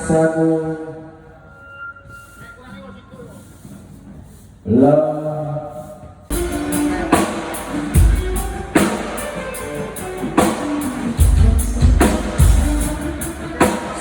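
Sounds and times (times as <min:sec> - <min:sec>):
drum kit hits: 0:06.3 - 0:14.0
rock band playing live: 0:06.3 - 0:14.0.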